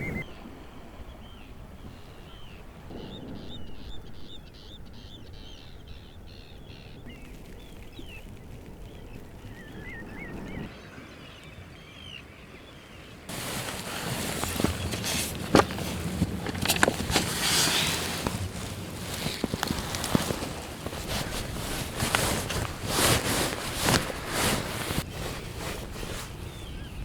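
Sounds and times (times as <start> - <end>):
shorebirds chirping: 0.0 - 27.0
close rustling and crackling: 6.8 - 10.1, 13.3 - 27.0.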